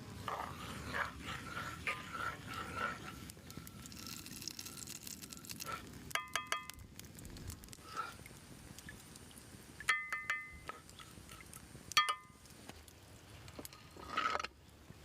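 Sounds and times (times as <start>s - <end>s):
metal utensil clinking on cookware: 12.0s - 12.3s.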